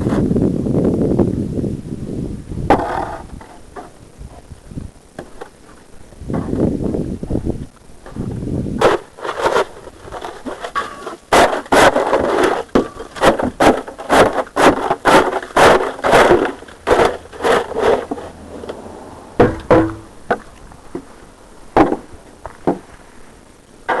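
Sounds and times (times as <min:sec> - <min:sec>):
snow shovel scraping ice: 0:08.8 - 0:18.8.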